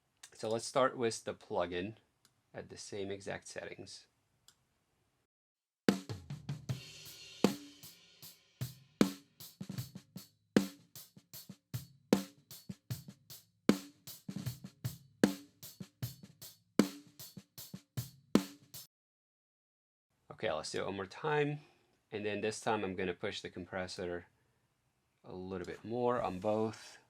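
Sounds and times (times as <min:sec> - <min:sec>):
cymbals: 0:06.7 - 0:09.6.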